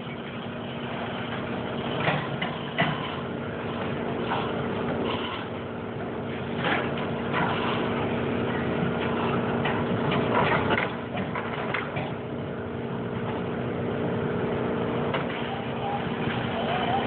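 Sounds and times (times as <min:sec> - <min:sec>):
engine humming: 0:00.0 - 0:17.0
knocks and scrapes: 0:02.0 - 0:05.6, 0:06.4 - 0:12.2.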